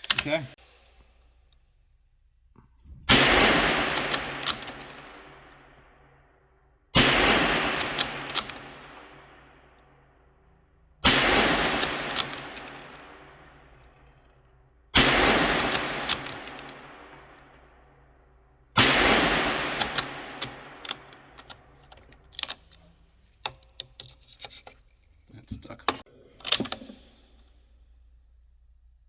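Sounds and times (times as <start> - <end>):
rifle shots echoing: 3.1 - 6.1, 7.0 - 9.7, 11.0 - 13.8, 14.9 - 18.0, 18.8 - 21.4
rifle bolt clicks: 3.9 - 5.6, 7.2 - 9.2, 11.4 - 13.2, 15.2 - 17.6, 18.8 - 22.8, 26.4 - 27.0.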